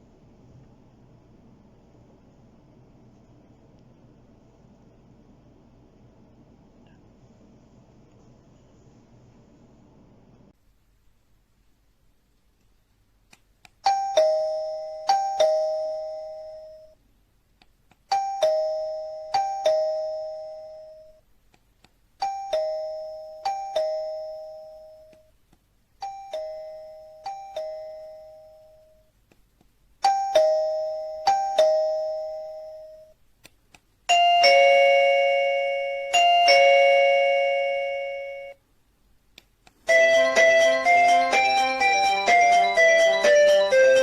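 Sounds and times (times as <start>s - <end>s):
two-tone doorbell chime: 13.9s - 17.0s, 18.1s - 21.2s, 22.2s - 25.1s, 26.0s - 29.0s, 30.0s - 33.2s, 34.1s - 38.6s, 39.9s - 44.0s
fuller chime tone: 39.9s - 44.0s.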